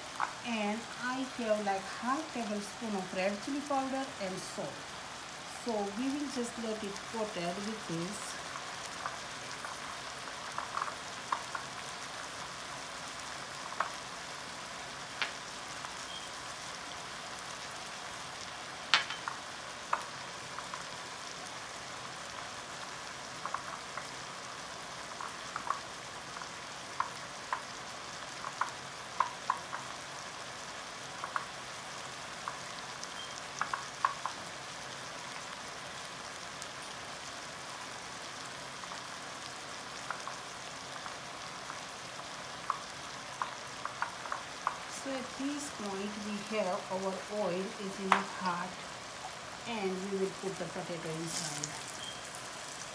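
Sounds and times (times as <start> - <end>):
oil pops and crackles: 0.0 - 0.4, 8.4 - 37.0, 37.8 - 45.0, 51.0 - 52.9
chicken sizzling in oil: 0.0 - 52.9.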